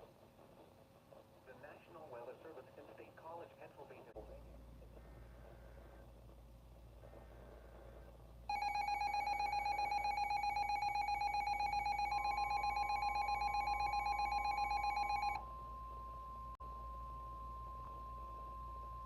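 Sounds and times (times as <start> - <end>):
two-tone attention signal: 8.5 - 16.5
steady single-pitch alert tone: 8.5 - 19.0.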